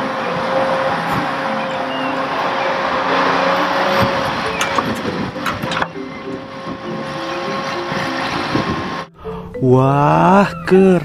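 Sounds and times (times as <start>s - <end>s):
excavator engine running: 0.0s - 9.8s
sharp metallic clanks: 3.3s - 8.7s.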